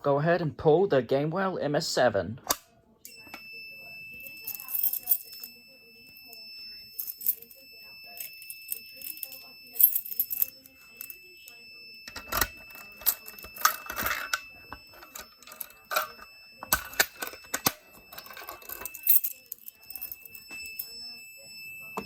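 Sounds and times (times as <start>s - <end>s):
fire alarm pull station clicks: 12.0s - 19.0s.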